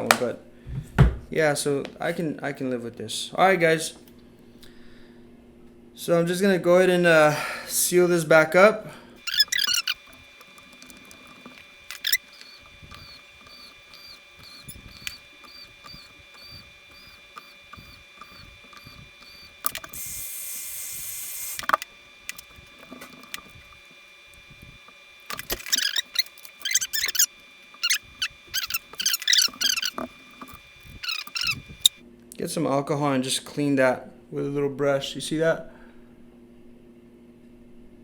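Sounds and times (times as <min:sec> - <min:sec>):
steady high hum: 0:09.1 - 0:32.0
phone parts clicking and squeaking: 0:09.2 - 0:32.0.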